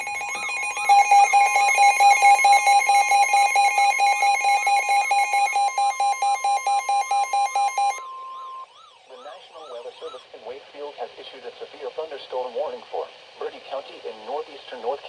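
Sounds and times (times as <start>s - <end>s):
rapid electronic beeping: 0.0s - 8.0s
steady attention tone: 0.0s - 8.0s
rising and falling siren tone: 0.0s - 9.0s.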